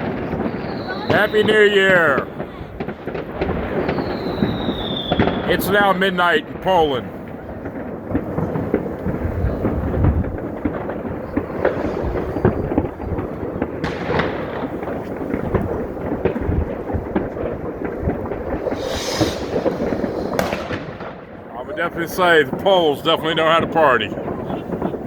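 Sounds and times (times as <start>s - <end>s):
fireworks crackling and popping: 0.0s - 25.0s
low fireworks booms: 0.0s - 25.0s
sharp fireworks reports: 0.0s - 25.0s.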